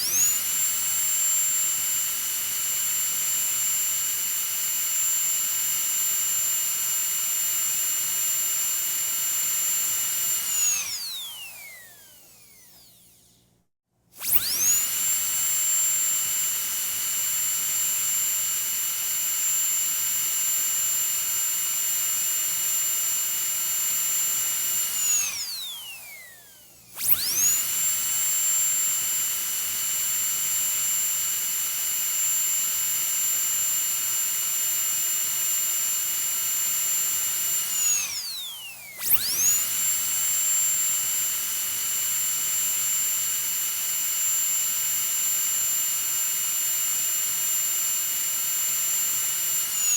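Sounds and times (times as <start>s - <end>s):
dental drill whining: 0.0s - 13.5s, 14.2s - 49.9s.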